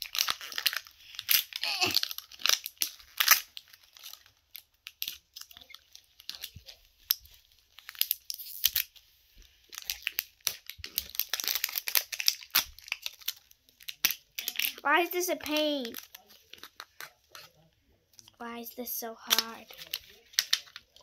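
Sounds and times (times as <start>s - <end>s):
plastic wrapping crinkling and tearing: 0.0s - 18.3s, 18.9s - 21.0s.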